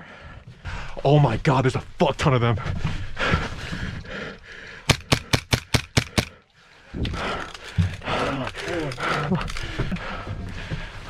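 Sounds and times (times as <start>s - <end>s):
airsoft gun shots: 4.9s - 6.4s.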